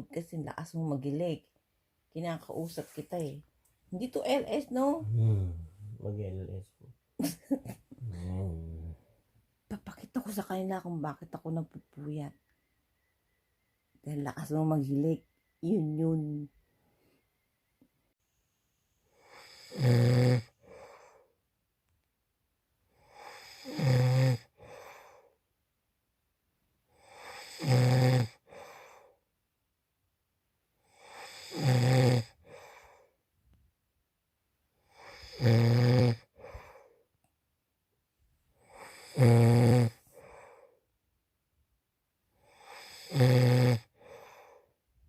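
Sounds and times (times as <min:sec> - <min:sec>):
man snoring loudly: 0:05.0 - 0:06.0, 0:08.0 - 0:09.0, 0:19.2 - 0:20.9, 0:23.1 - 0:24.9, 0:27.0 - 0:28.8, 0:30.9 - 0:32.8, 0:34.9 - 0:36.3, 0:38.6 - 0:40.0, 0:42.5 - 0:44.2.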